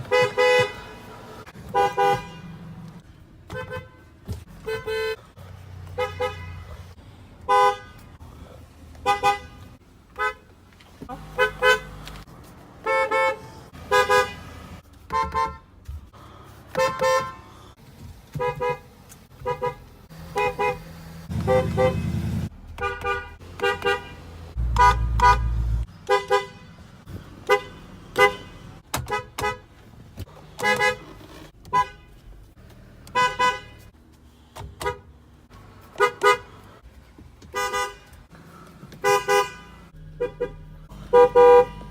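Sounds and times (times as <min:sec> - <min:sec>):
car horns honking: 0:00.0 - 0:02.7, 0:03.5 - 0:05.3, 0:05.9 - 0:06.7, 0:07.5 - 0:08.2, 0:09.0 - 0:10.5, 0:11.1 - 0:15.7, 0:16.7 - 0:17.6, 0:18.3 - 0:32.2, 0:33.0 - 0:33.9, 0:34.8 - 0:35.2, 0:35.8 - 0:36.7, 0:37.4 - 0:41.9
low rumbles: 0:24.5 - 0:25.9.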